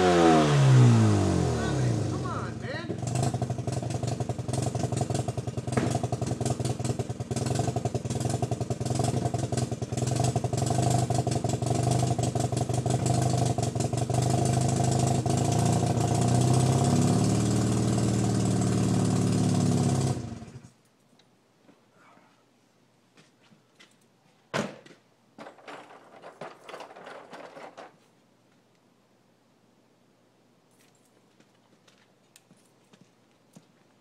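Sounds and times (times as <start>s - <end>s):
rotary engine idling: 3.0s - 20.7s.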